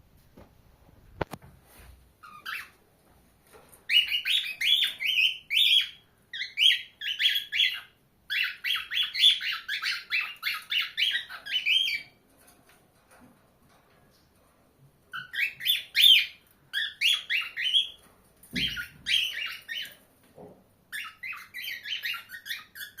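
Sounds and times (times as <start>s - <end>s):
cockatiel whistling chirps: 3.9s - 12.0s, 15.2s - 18.0s, 21.0s - 23.0s.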